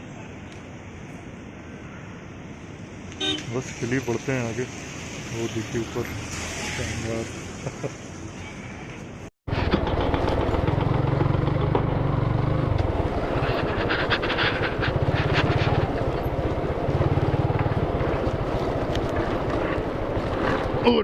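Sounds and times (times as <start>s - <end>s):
wind and road noise: 0.0s - 21.0s
motorcycle engine running: 9.5s - 21.0s.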